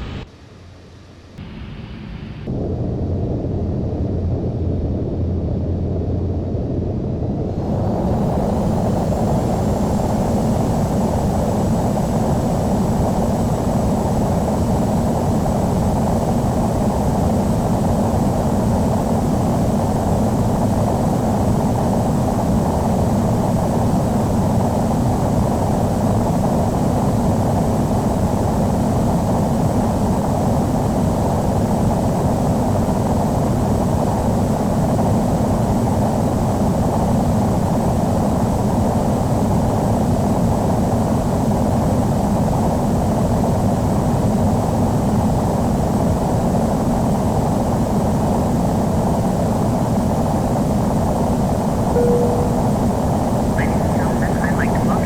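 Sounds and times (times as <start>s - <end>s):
airplane cabin roar: 0.0s - 0.3s, 7.2s - 12.0s, 51.9s - 55.0s
faint high whine: 0.0s - 2.5s, 51.9s - 55.0s.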